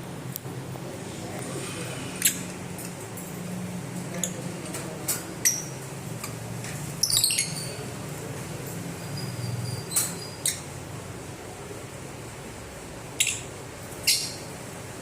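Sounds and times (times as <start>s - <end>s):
birds chirping high-pitched: 5.4s - 5.9s, 6.8s - 8.0s, 8.9s - 10.8s, 13.2s - 14.6s.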